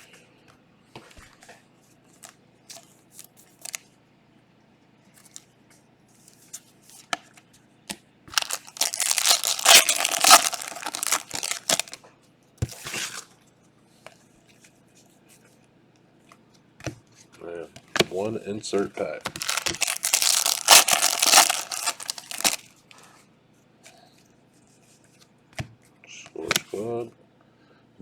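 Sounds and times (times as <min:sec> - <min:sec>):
cards being handled: 0:08.3 - 0:12.0, 0:19.3 - 0:22.7
foil wrapper tearing: 0:08.3 - 0:12.0, 0:12.8 - 0:13.3, 0:19.3 - 0:22.7.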